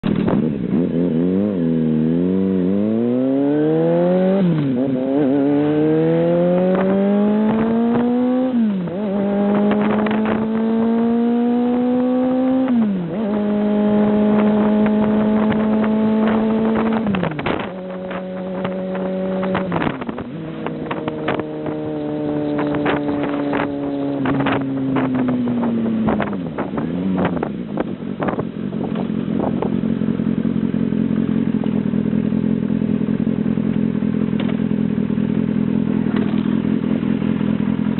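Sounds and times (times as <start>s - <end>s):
exhaust pops: 0.0s - 0.6s, 14.4s - 29.7s, 33.7s - 36.7s
motorcycle engine accelerating: 0.0s - 37.9s.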